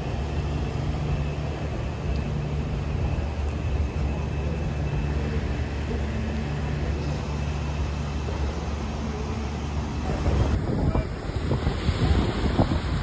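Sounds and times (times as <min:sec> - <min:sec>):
distant engine drone: 0:00.0 - 0:13.0
wind buffeting microphone: 0:10.0 - 0:13.0.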